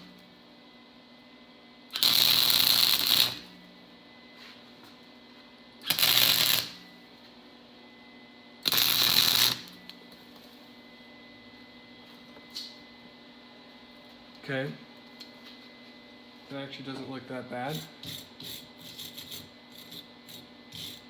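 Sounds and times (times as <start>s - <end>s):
faint hum: 0.0s - 21.0s
arc welder crackling: 1.9s - 3.7s, 5.8s - 6.9s, 8.6s - 10.0s.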